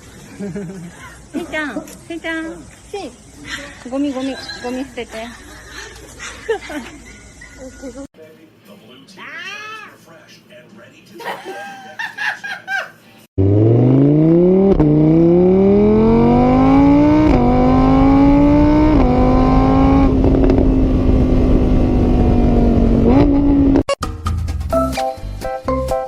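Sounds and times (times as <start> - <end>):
vehicle engine accelerating: 13.4 - 23.9.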